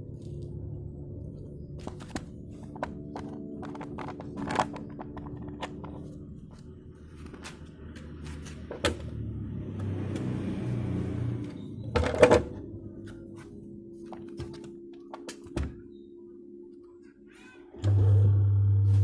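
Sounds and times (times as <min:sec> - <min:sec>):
washing machine humming: 0:17.7 - 0:19.0.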